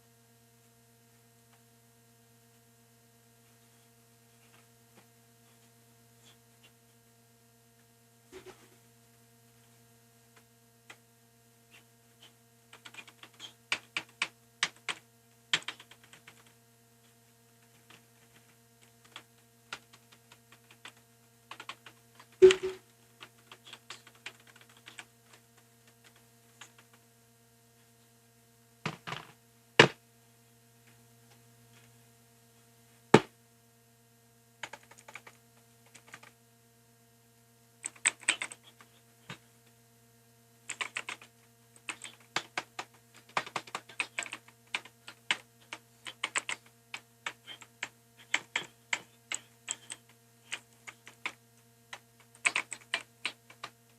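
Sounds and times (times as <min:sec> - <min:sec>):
faint steady hum: 0:00.0 - 0:53.9
mechanical keyboard typing: 0:12.7 - 0:16.5, 0:17.8 - 0:25.1, 0:34.6 - 0:36.3, 0:37.8 - 0:38.9, 0:40.7 - 0:53.8.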